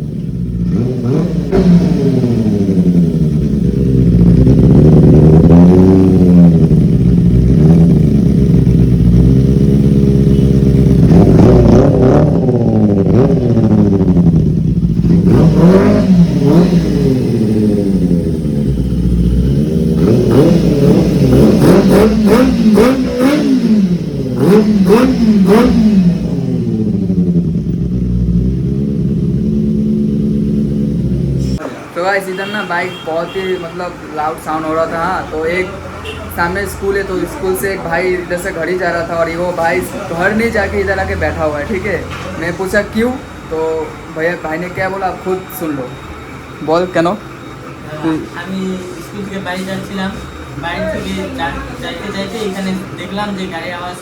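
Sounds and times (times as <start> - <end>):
motorcycle engine revving: 0.0 - 31.7, 33.7 - 54.0.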